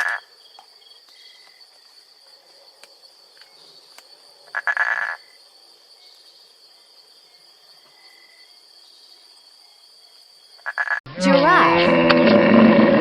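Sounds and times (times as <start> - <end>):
frog croaking: 0.0 - 0.4, 4.4 - 5.4, 10.6 - 13.0.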